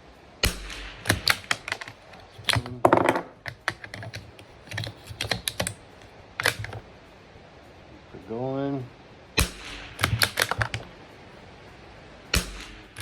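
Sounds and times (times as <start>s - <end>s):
rifle shot: 0.4s - 3.4s, 9.4s - 11.0s, 12.3s - 13.0s
rifle bolt metallic clicks: 0.4s - 5.8s, 6.4s - 6.8s, 9.4s - 10.9s, 12.4s - 13.0s.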